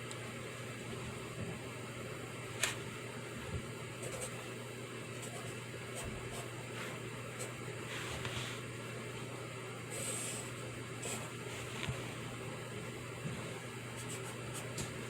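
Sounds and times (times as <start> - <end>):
steady hiss and low hum: 0.0 - 15.0
pencil writing on paper: 4.0 - 4.4.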